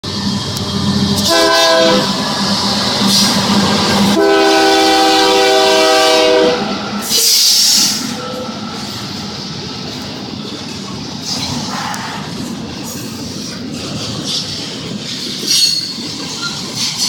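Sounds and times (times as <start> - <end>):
diesel locomotive running: 0.0 - 17.0
locomotive horn chord: 1.2 - 2.2, 4.0 - 8.7
loud hiss: 6.6 - 9.1.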